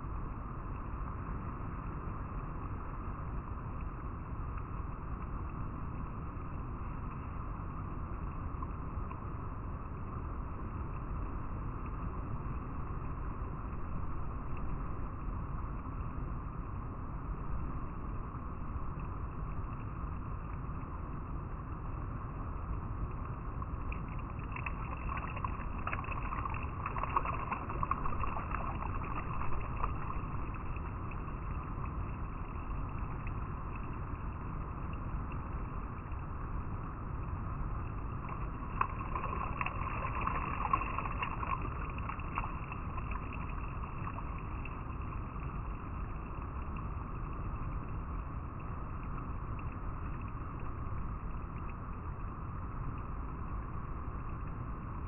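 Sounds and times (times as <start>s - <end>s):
river water flowing over rocks: 16.3s - 55.0s.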